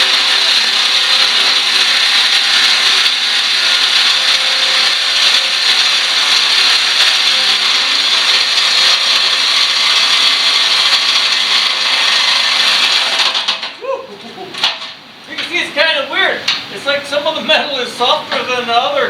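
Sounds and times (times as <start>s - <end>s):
jigsaw cutting sheet steel: 0.0s - 13.8s.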